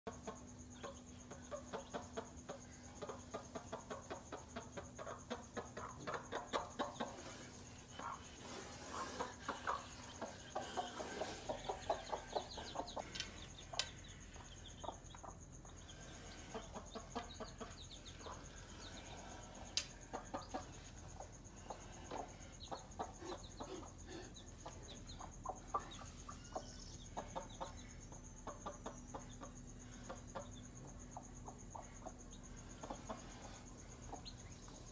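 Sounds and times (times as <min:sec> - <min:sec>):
hen clucking rapidly: 0:00.1 - 0:34.5.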